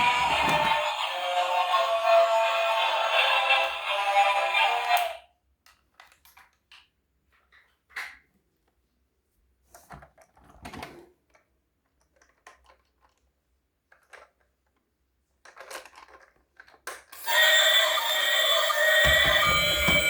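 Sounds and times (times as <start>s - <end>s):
plastic toys clattering: 11.3s - 13.3s, 13.9s - 17.1s
loud electronic tune: 17.2s - 20.0s.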